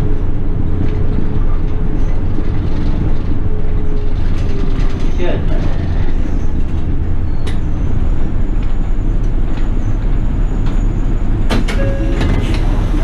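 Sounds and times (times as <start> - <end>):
bus engine and road rumble: 0.0 - 13.0.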